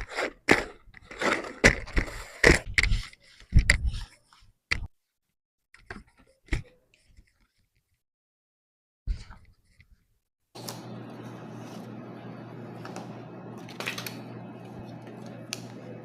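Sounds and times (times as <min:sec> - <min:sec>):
gift box scrapes and rustles: 0:00.0 - 0:02.4.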